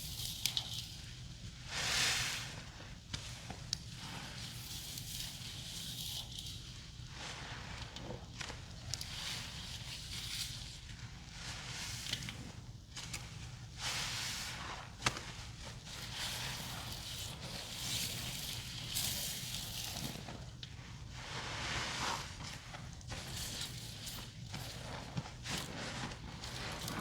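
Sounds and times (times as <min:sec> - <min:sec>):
wet squishing of sponges: 0:07.1 - 0:27.0.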